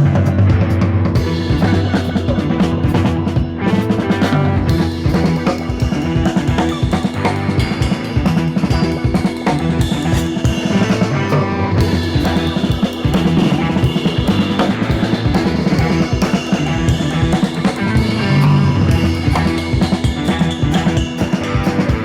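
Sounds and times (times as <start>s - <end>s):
rock music with drums: 0.0s - 22.0s.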